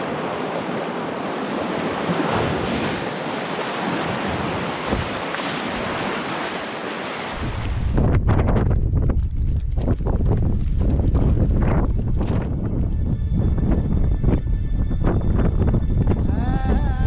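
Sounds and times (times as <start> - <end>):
river water rushing: 0.0 - 7.5
wind buffeting microphone: 3.7 - 6.4, 7.3 - 17.0.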